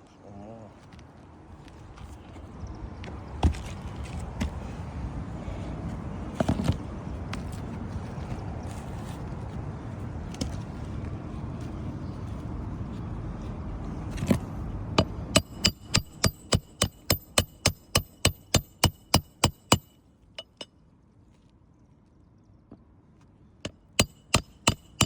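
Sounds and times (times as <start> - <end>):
hammer striking nail: 15.0 - 20.7, 23.7 - 25.0.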